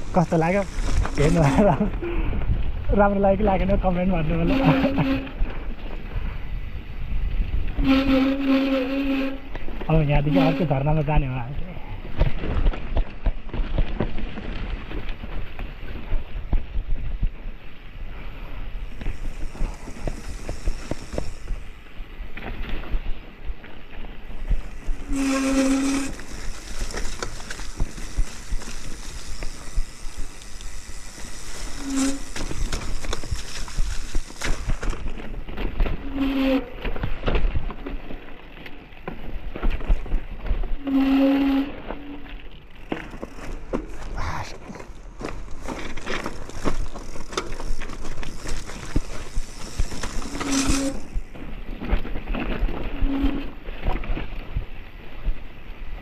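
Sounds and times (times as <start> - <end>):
wind on microphone: 0.0 - 9.8
bike rattling on rough trail: 0.0 - 56.0.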